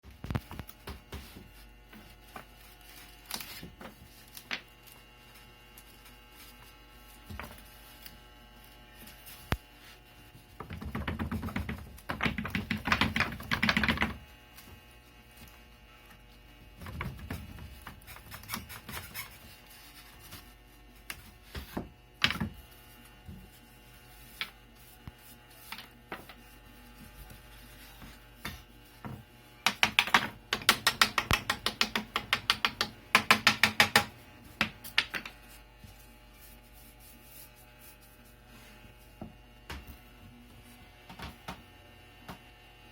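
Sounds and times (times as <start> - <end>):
wooden pieces clicking and knocking: 29.7 - 35.4.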